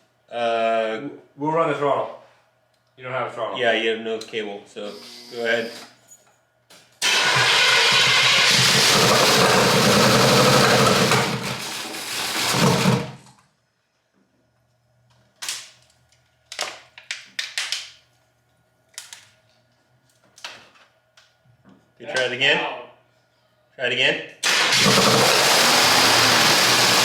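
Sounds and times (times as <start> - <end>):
engine cranking by starter: 7.0 - 13.3, 24.4 - 27.0.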